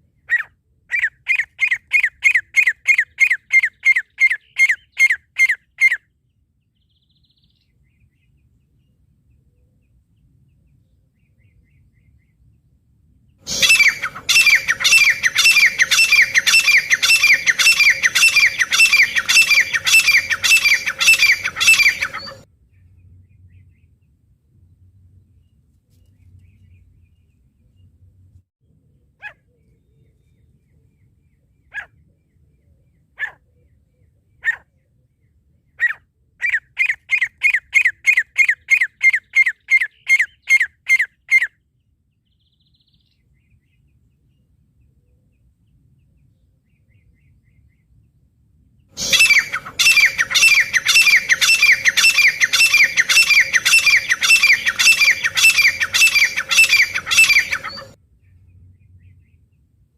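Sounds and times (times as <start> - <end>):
francolin calls: 13.5 - 22.4, 49.0 - 58.0.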